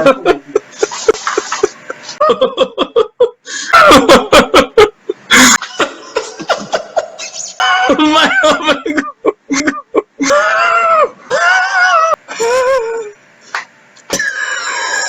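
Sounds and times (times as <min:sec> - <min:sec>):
man laughing: 0:00.0 - 0:13.1
man coughing: 0:05.3 - 0:07.2, 0:07.9 - 0:10.5, 0:14.1 - 0:15.0.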